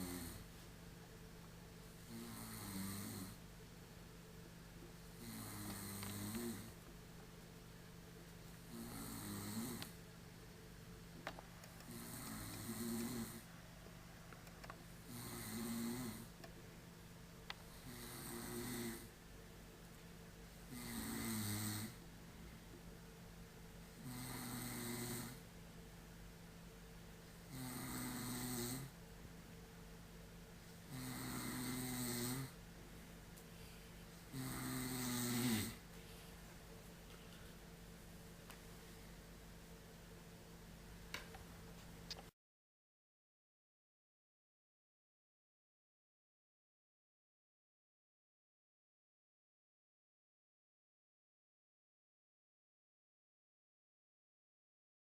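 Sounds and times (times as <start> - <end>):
man snoring: 0.0 - 0.5, 2.0 - 3.4, 5.2 - 6.8, 8.7 - 9.9, 11.9 - 13.5, 15.1 - 16.3, 17.7 - 19.1, 20.7 - 22.0, 24.0 - 25.4, 27.5 - 29.0, 30.9 - 32.6, 34.3 - 35.8.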